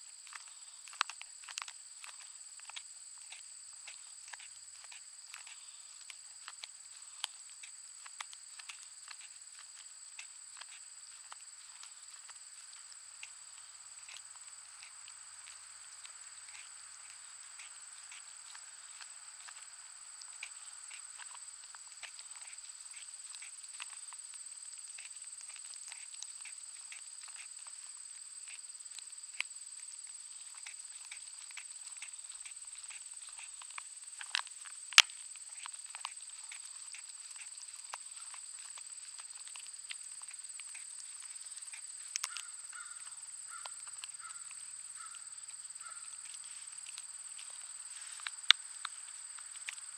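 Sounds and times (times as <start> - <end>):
dog chewing a bone: 41.7 - 44.4.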